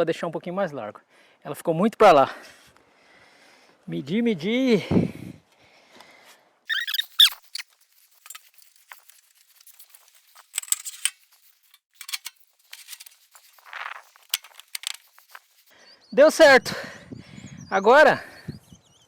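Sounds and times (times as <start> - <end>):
roof tile scraping: 6.7 - 15.7
short squeaks: 6.7 - 15.7.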